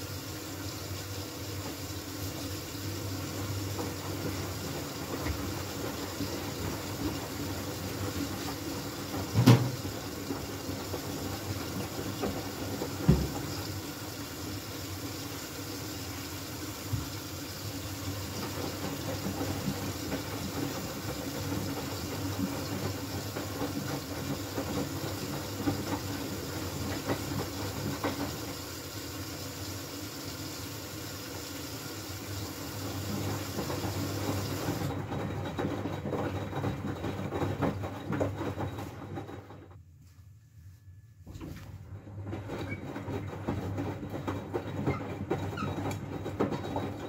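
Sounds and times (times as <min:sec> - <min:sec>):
washing machine motor running: 0:00.0 - 0:39.8, 0:41.4 - 0:47.0
water sloshing in washing machine: 0:00.0 - 0:39.8, 0:41.4 - 0:47.0
washing machine drum knocks: 0:03.4 - 0:13.9, 0:16.9 - 0:17.2, 0:18.0 - 0:28.6.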